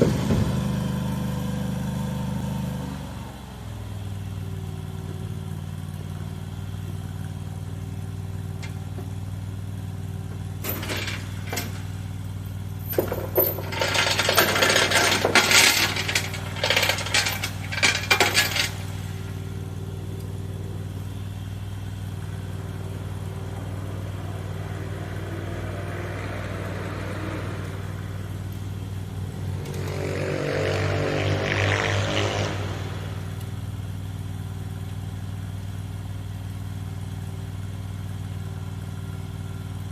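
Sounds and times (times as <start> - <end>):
engine idling: 0.0 - 39.9
metallic clanking and scraping: 10.3 - 19.8.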